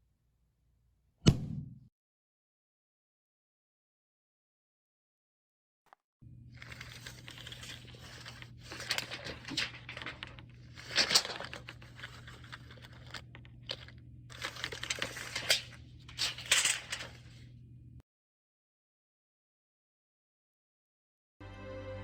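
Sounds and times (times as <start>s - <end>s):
crinkling and rustling: 6.4s - 17.5s.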